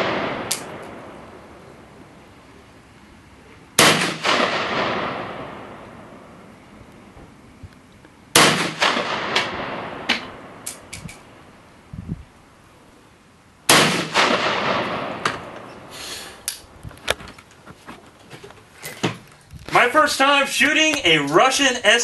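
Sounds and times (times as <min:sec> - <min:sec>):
distant gunshots: 0:00.0 - 0:01.2, 0:03.8 - 0:06.2, 0:08.3 - 0:10.6, 0:13.7 - 0:15.8
loud rifle shots with echo: 0:00.0 - 0:01.4, 0:03.8 - 0:06.4, 0:08.3 - 0:10.9, 0:13.7 - 0:15.9.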